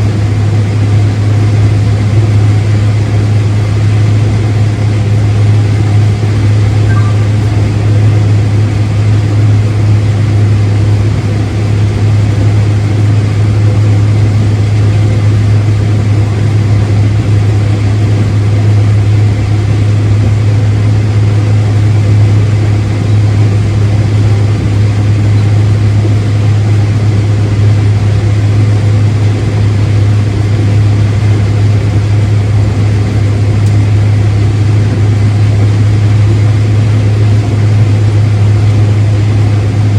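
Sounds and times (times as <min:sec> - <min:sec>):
farm machinery engine humming: 0:00.0 - 0:39.9.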